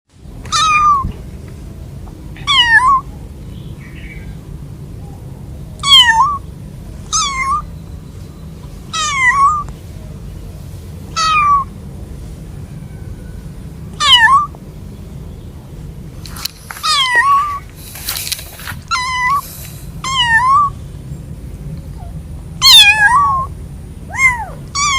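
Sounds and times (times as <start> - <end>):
steady low hum: 0.1 - 24.9
kitten meowing: 0.5 - 1.1, 2.4 - 3.1, 5.8 - 6.4, 7.1 - 7.7, 8.9 - 9.7, 11.1 - 11.7, 14.0 - 14.5, 16.8 - 17.7, 18.9 - 19.4, 20.0 - 20.8, 22.6 - 23.5, 24.1 - 24.9.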